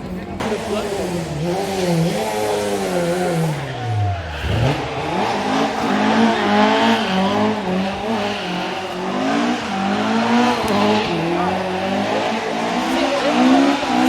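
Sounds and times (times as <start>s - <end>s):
rally car engine revving: 0.0s - 14.0s.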